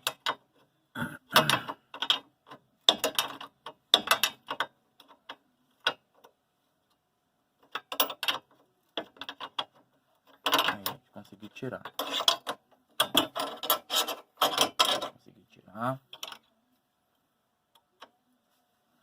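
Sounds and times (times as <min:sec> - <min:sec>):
wrench clicking on metal parts: 0:01.4 - 0:06.1.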